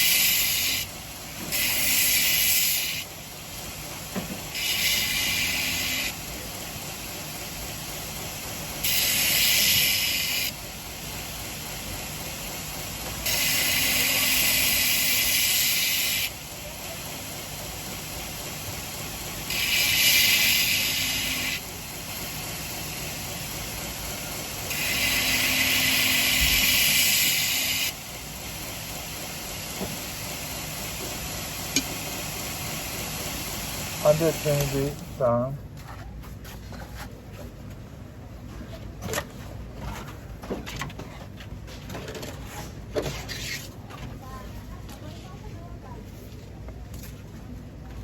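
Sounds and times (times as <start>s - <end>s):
belt grinder motor running: 4.4s - 6.7s, 8.8s - 11.0s, 13.0s - 16.5s, 17.6s - 29.4s
blade grinding on belt: 4.5s - 6.2s, 13.2s - 16.3s, 19.5s - 21.7s, 24.7s - 28.0s.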